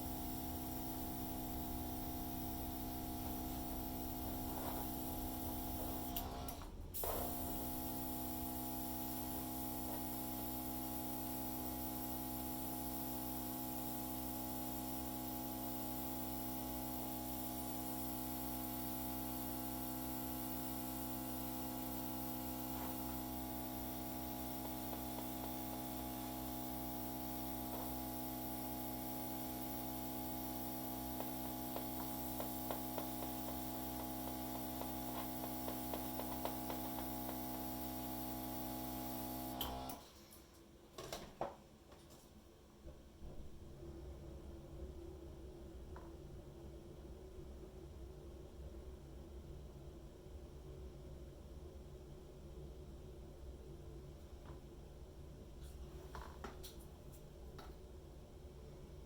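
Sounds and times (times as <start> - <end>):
electrical hum with steady tones: 0.0 - 40.0.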